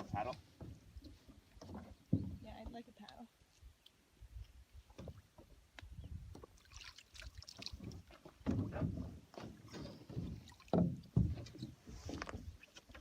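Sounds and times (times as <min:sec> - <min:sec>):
paddle knocking against hull: 0:00.0 - 0:02.8, 0:07.6 - 0:13.0
paddle splashes: 0:06.3 - 0:13.0.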